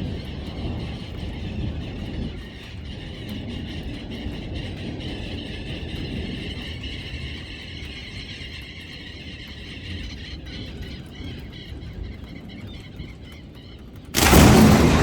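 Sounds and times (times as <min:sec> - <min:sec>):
thunder rumbling: 0:14.2 - 0:15.0.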